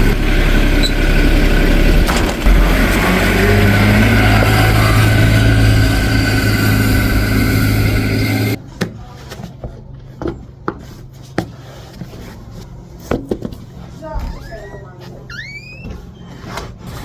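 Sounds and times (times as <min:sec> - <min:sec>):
engine humming: 0:00.0 - 0:08.6.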